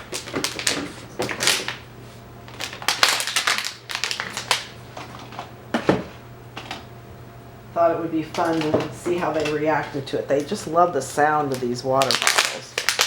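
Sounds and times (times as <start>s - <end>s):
plastic bottle crinkling: 0.0s - 1.8s, 2.5s - 4.7s, 11.5s - 13.0s.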